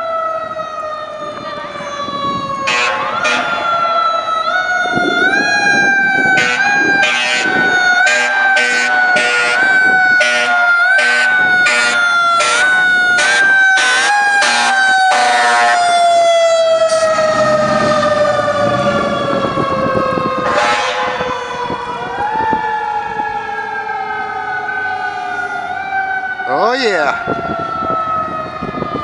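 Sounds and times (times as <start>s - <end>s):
fire truck siren wailing: 0.0s - 29.0s
air horn blasts: 2.7s - 3.6s, 6.4s - 15.8s, 20.4s - 21.2s.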